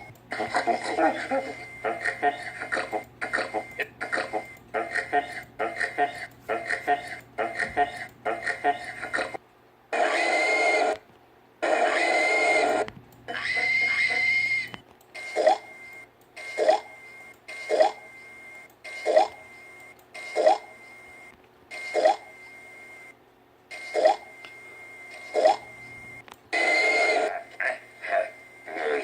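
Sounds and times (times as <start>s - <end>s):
cartoon pig sounds: 0.3s - 11.0s, 11.6s - 14.7s, 26.6s - 29.0s.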